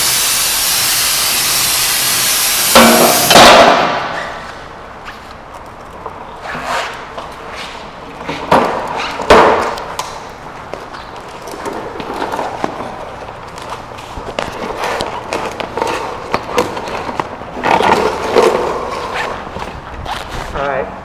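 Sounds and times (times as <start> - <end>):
bike knocking and clattering: 2.5 - 19.8
loud thump: 2.7 - 4.2.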